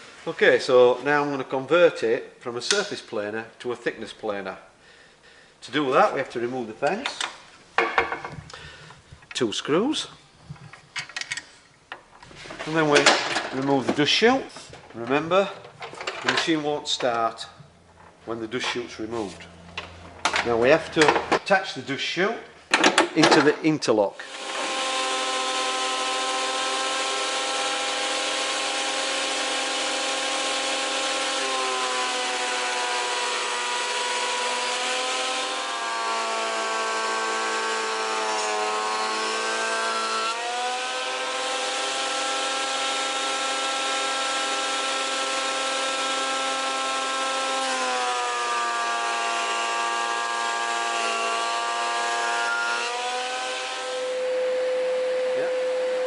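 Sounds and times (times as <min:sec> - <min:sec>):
planer motor whining: 0:24.3 - 0:56.0.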